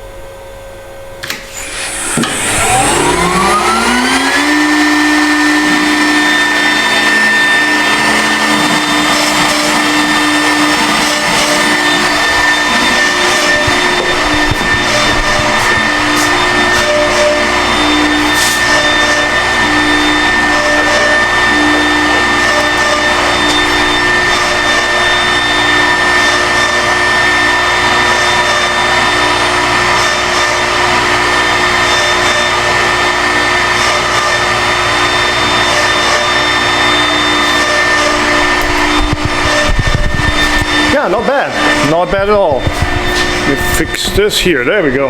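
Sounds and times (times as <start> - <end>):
router spindle high whine: 0.0 - 45.0
loud rushing noise: 1.9 - 27.3, 37.8 - 45.0.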